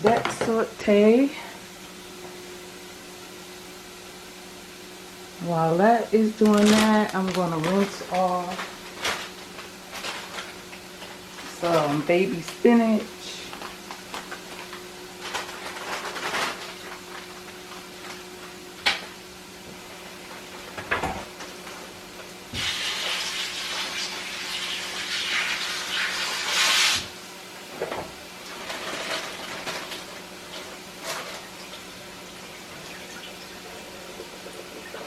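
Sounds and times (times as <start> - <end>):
steady low hum: 0.0 - 22.6
kitchen tap running: 22.5 - 27.0, 31.3 - 35.0.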